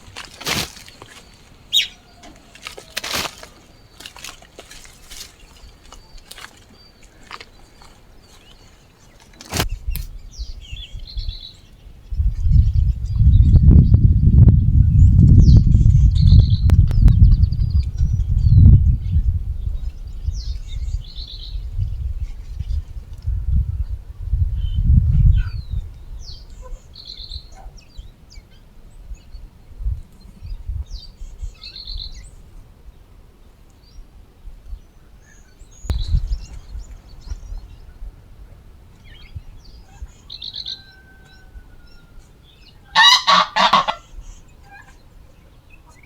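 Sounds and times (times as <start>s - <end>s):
small birds chirping: 0.0s - 24.0s, 33.7s - 46.0s
domestic fowl calling: 1.7s - 3.8s, 39.8s - 45.0s.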